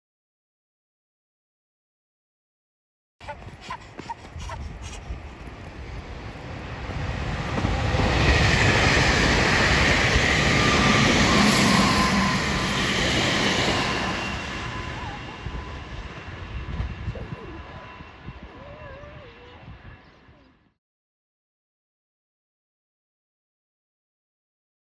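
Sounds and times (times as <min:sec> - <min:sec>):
electric train passing: 0:03.3 - 0:20.6
motor and wheel whine: 0:03.3 - 0:20.7.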